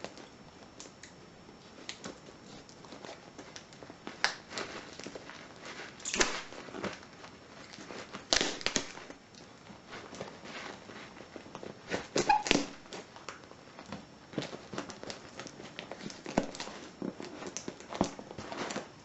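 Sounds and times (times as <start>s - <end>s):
cardboard parcel being opened: 1.7s - 19.0s.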